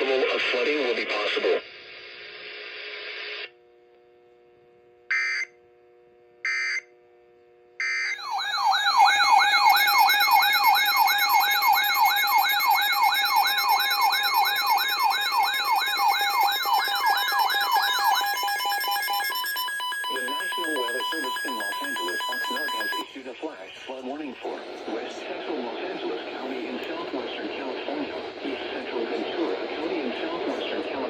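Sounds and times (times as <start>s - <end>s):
warbling siren attention tone: 7.8s - 23.0s
digital data bursts: 8.1s - 23.1s.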